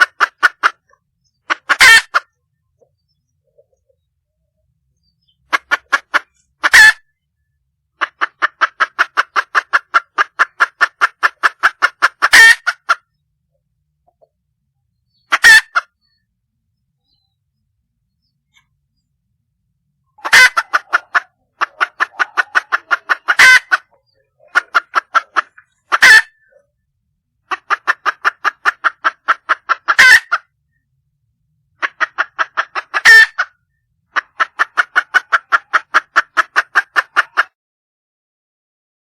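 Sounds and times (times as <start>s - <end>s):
hen clucking: 0.0s - 4.1s, 5.0s - 7.2s, 8.0s - 13.2s, 15.0s - 16.3s, 20.1s - 26.8s, 27.4s - 30.5s, 31.8s - 37.6s.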